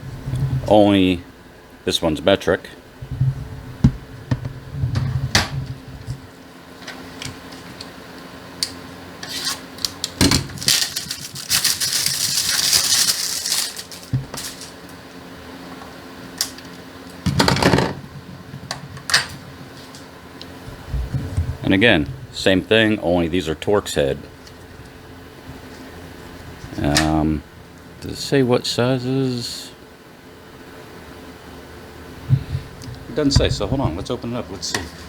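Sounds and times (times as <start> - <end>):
packaging rustling: 9.2 - 15.0.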